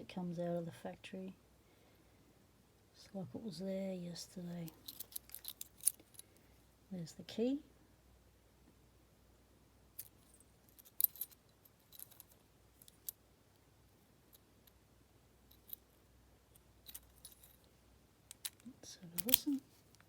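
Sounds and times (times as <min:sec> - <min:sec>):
padlock and key clicking: 0:19.2 - 0:19.6.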